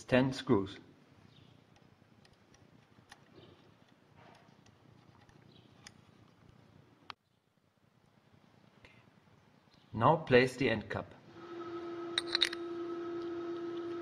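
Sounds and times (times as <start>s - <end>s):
faint clicks and metal taps: 1.7s - 7.2s.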